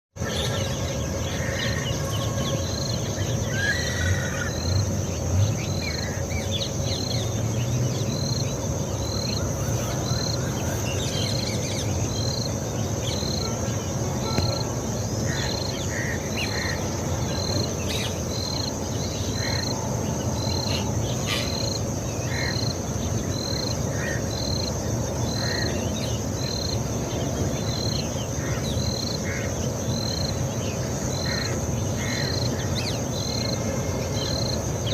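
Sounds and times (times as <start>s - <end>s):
high-pitched insect whine: 0.2s - 34.9s
insect chirping: 0.2s - 34.9s.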